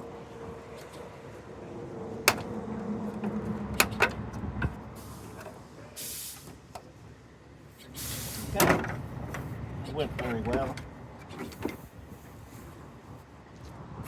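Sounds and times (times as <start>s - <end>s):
short hiss: 6.0s - 6.5s, 8.0s - 8.5s.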